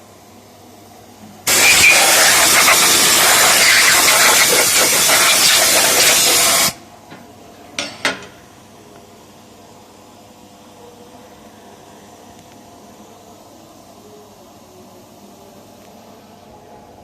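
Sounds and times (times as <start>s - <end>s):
loud steady hiss: 1.5s - 6.8s.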